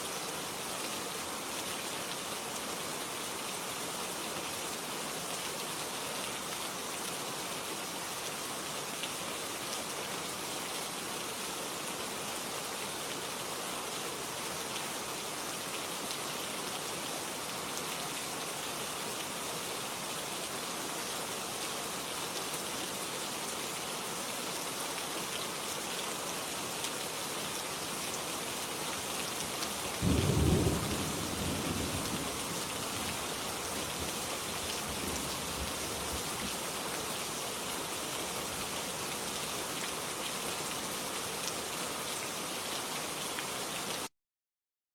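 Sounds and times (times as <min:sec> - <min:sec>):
steady rain: 0:00.0 - 0:44.1
low rumble of thunder: 0:30.0 - 0:33.1.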